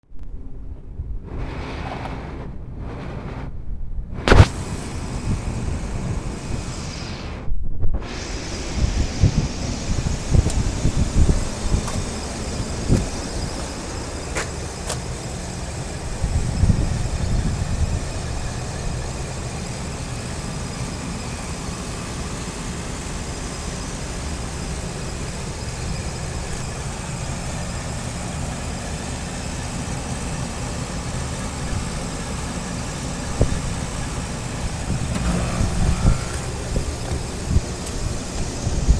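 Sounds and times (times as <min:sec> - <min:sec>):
machinery rumbling hum: 0:00.1 - 0:38.9
sharp click: 0:04.3 - 0:04.6.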